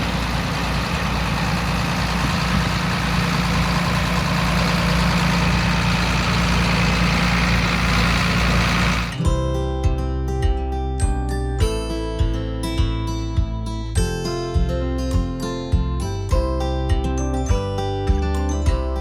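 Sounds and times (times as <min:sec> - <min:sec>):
combine harvester running: 0:00.0 - 0:09.3.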